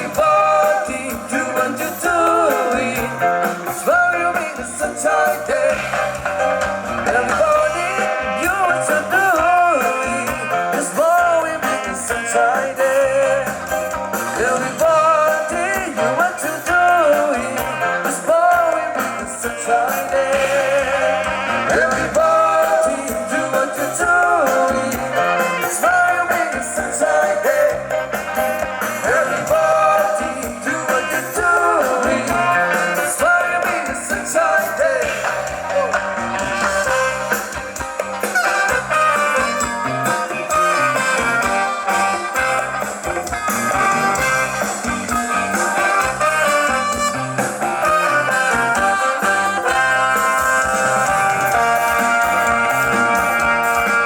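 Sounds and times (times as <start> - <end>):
person singing: 0.0 - 28.1, 28.9 - 36.1
live band playing: 0.0 - 54.0.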